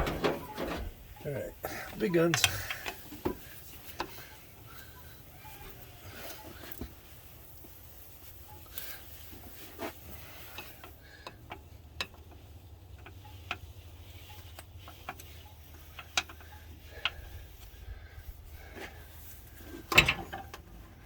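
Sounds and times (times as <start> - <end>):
tools clicking and tapping: 10.5 - 17.7.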